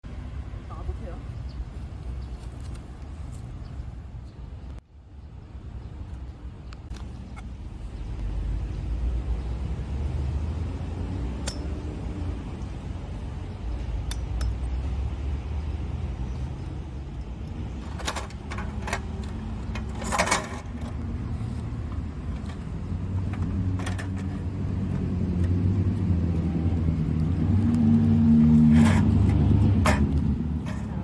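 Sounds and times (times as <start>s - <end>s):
low engine rumble: 0.0s - 31.0s
metal table parts clicking: 17.2s - 21.0s, 22.4s - 25.6s, 28.6s - 31.0s.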